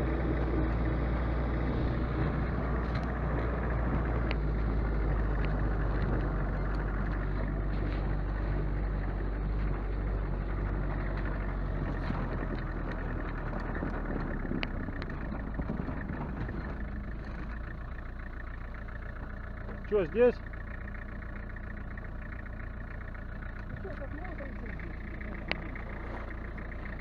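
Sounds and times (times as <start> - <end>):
vehicle engine droning: 0.0 - 27.0
faint clicks: 2.8 - 8.2, 10.9 - 17.7, 24.9 - 27.0.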